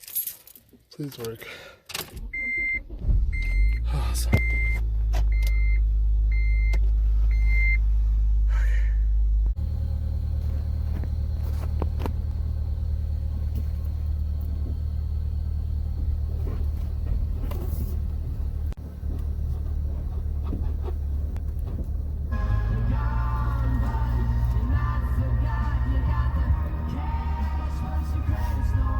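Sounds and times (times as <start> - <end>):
car engine running: 9.1 - 28.9
car rattling over rough ground: 9.6 - 28.9.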